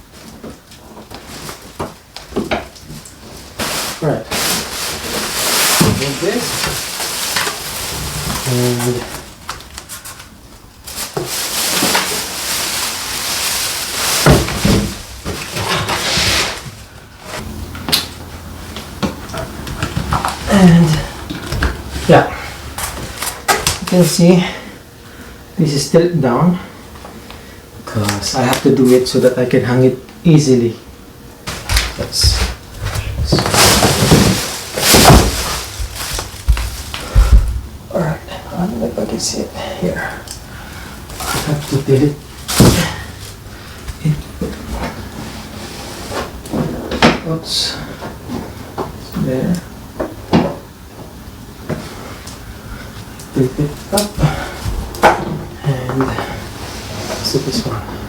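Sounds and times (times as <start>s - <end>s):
rustling: 2.8s - 17.6s, 31.4s - 38.1s.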